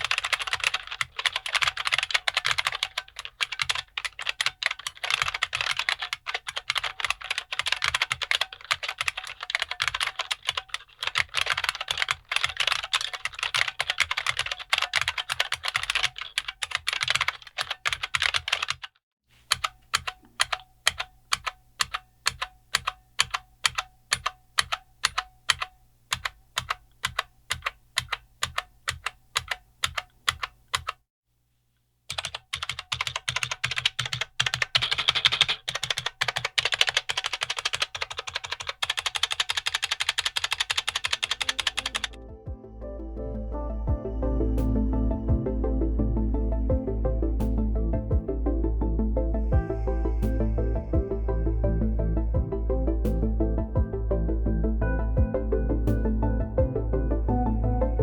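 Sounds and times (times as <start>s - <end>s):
typing on a clicky keyboard: 0.0s - 31.0s, 32.1s - 42.2s.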